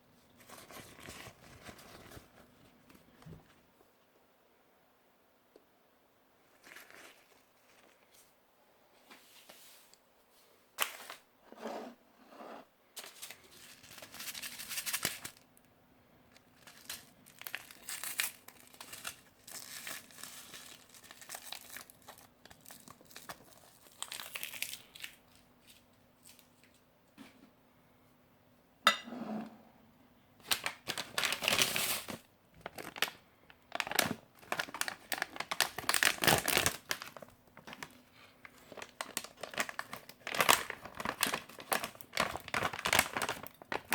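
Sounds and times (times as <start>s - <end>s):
plastic and foil packaging crinkling: 0.4s - 3.4s, 6.5s - 8.3s, 13.0s - 15.4s, 16.4s - 26.8s, 30.4s - 43.9s.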